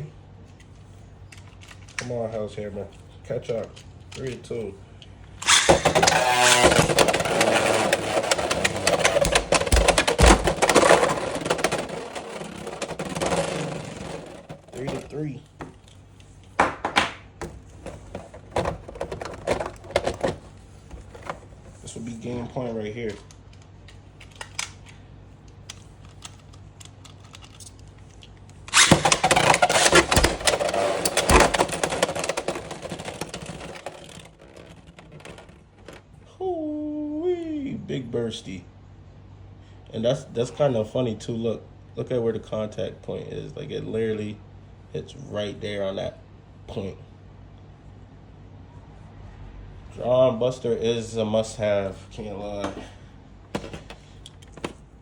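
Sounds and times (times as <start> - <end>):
spinning tops scraping in stadium: 5.4 - 15.3, 28.7 - 36.0.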